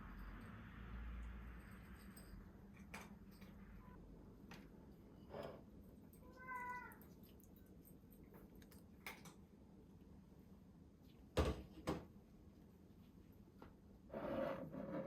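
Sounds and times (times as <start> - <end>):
cat meowing: 6.2 - 7.0.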